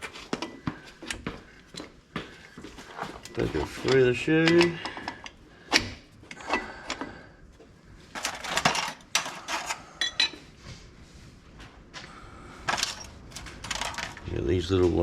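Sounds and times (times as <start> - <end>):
metal brake hardware clinking: 3.0 - 7.0, 8.1 - 10.4.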